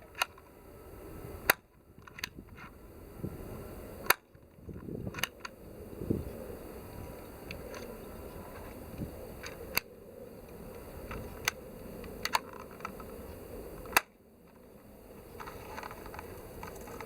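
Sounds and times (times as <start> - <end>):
airsoft pistol clicks and snaps: 11.1 - 13.1, 13.8 - 14.1.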